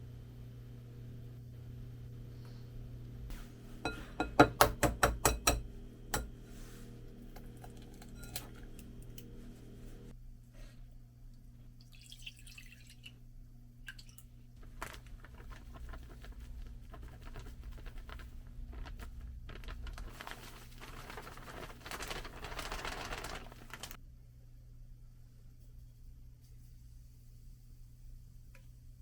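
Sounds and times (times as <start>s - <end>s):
steady low hum: 0.0s - 11.9s.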